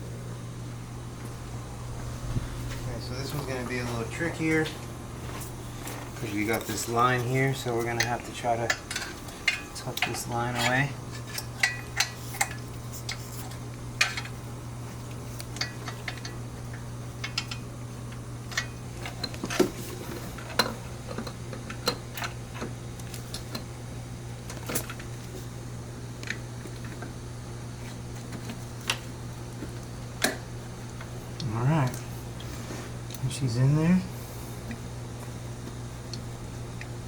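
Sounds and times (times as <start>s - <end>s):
low hum: 0.0s - 7.8s.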